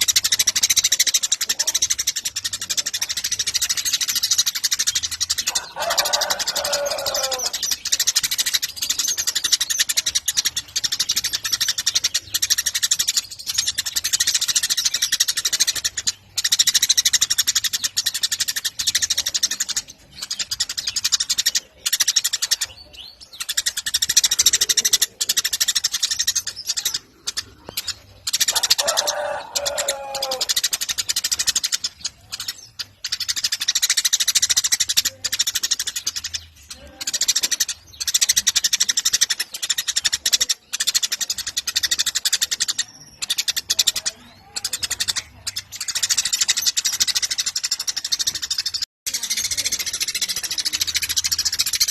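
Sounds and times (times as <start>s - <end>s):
lower-pitched bird call: 0.0s - 36.5s
sparrows chirping: 0.0s - 51.9s.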